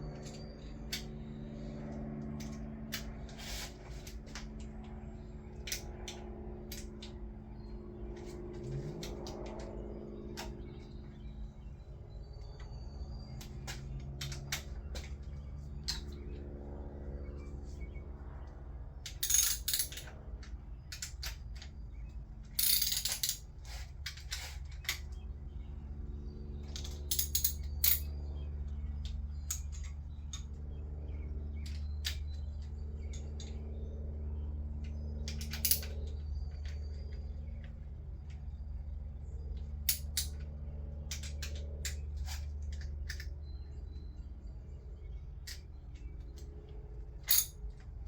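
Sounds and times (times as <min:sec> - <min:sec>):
steady low hum: 0:00.0 - 0:48.0
tools clinking on metal: 0:19.1 - 0:20.1, 0:22.5 - 0:23.5, 0:26.7 - 0:28.1, 0:35.3 - 0:36.2, 0:39.9 - 0:40.4, 0:47.2 - 0:47.8.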